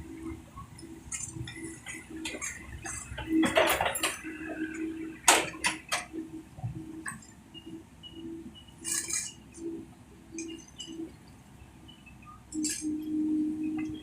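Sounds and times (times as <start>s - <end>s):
faint broken hum: 0.0s - 14.0s
clinks and sharp knocks: 1.1s - 4.7s.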